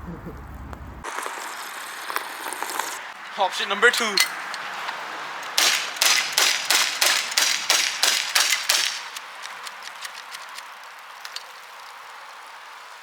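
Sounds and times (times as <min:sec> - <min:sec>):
bb gun firing pops: 0:05.4 - 0:10.7.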